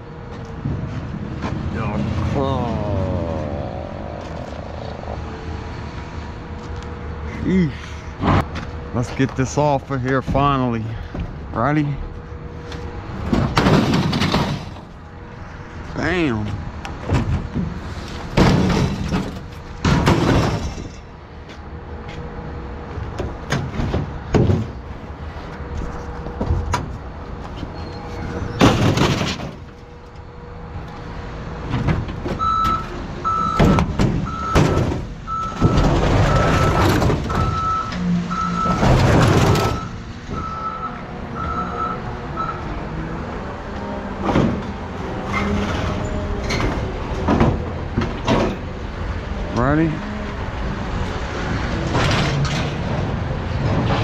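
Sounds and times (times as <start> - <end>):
scrap metal crashing and scraping: 13.2 - 15.0, 17.1 - 21.1, 28.4 - 29.8, 34.0 - 39.9
reversing alarm beeping: 32.4 - 38.8, 39.5 - 42.8.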